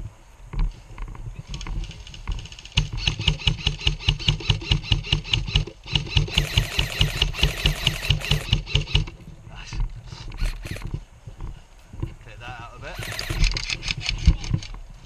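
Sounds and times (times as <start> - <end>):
airsoft rifle firing full auto: 1.5 - 9.2, 12.9 - 14.8.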